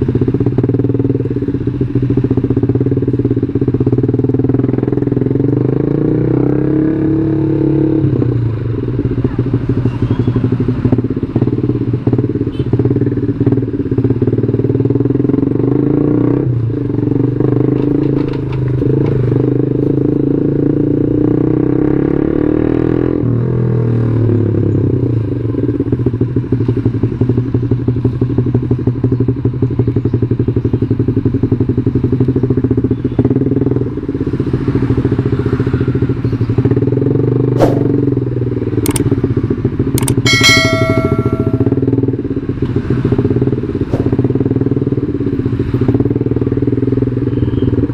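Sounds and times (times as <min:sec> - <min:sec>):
motorcycle engine running: 0:00.0 - 0:17.5, 0:25.0 - 0:47.9
sharp clicks: 0:38.9 - 0:39.1, 0:40.0 - 0:40.2
brief high-pitched tone: 0:40.3 - 0:41.9.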